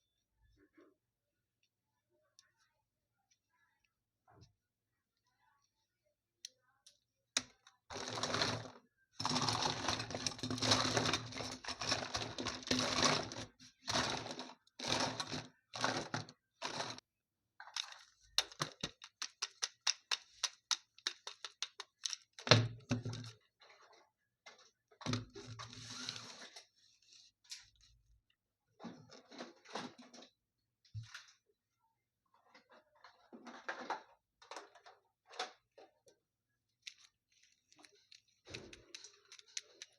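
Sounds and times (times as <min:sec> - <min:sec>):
packaging rustling and scraping: 0:07.9 - 0:17.0
small clicks and cracks: 0:17.6 - 0:23.3, 0:36.8 - 0:39.9.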